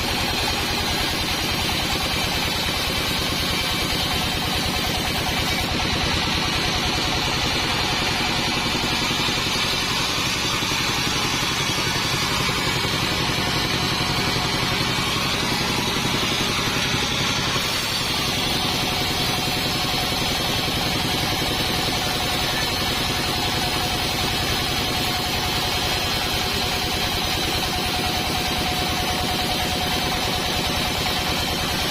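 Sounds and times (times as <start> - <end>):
steady whine: 0.0 - 21.3
sawmill engine running: 0.0 - 31.9.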